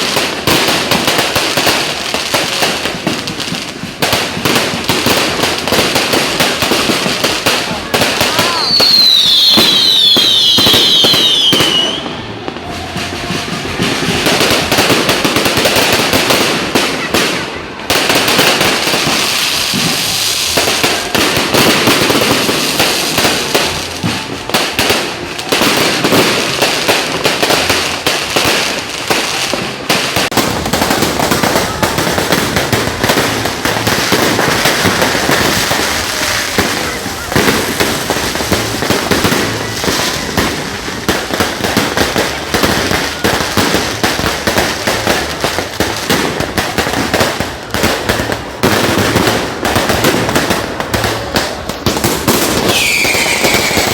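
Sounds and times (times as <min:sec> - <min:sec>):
fireworks bangs and crackles: 0:00.0 - 0:53.9
falling firework whistle: 0:08.0 - 0:14.8, 0:52.3 - 0:53.9.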